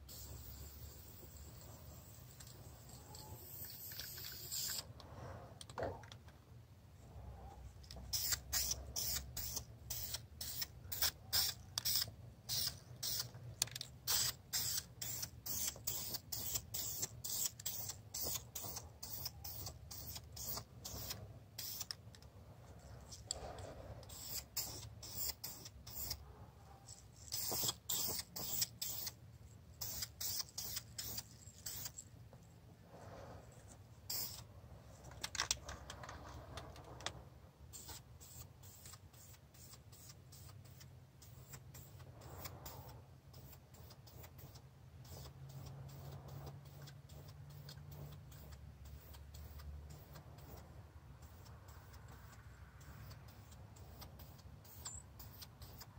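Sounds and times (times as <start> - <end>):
aerosol can spraying bursts: 0.1 - 4.9, 8.1 - 13.3, 14.0 - 21.9, 24.0 - 26.2, 27.3 - 29.2, 29.8 - 32.0, 34.1 - 34.5.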